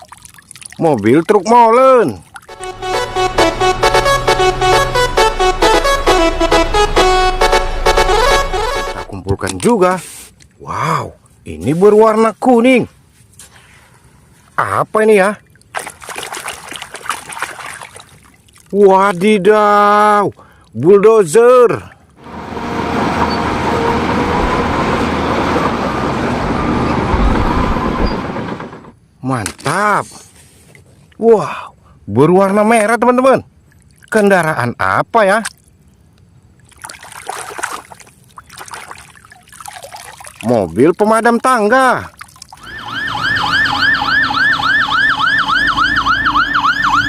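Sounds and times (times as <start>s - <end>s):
toy siren warbling: 42.6s - 47.0s.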